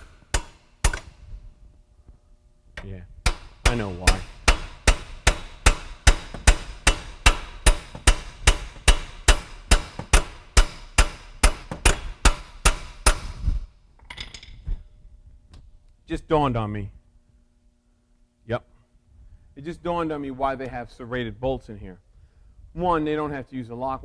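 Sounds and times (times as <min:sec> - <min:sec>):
steel hammer striking metal: 0:00.0 - 0:01.2, 0:03.2 - 0:13.4.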